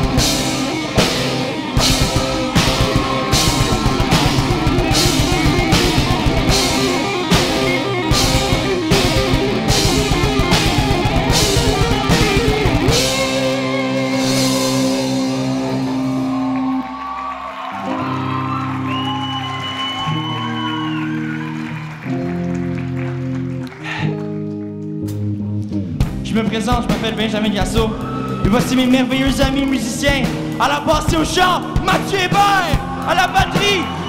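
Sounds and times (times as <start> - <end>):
drum kit with cymbal hits: 0.0 - 16.6, 26.0 - 34.0
bass guitar: 0.0 - 34.0
electric guitars: 0.0 - 34.0.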